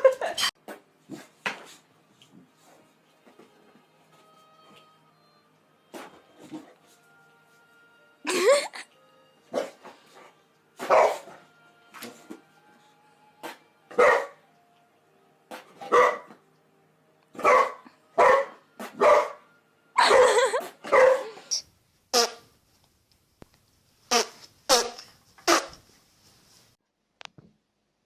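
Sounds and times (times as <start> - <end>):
dog barking: 10.8 - 11.4, 13.9 - 14.4, 15.8 - 16.4, 17.4 - 19.4, 20.0 - 21.4.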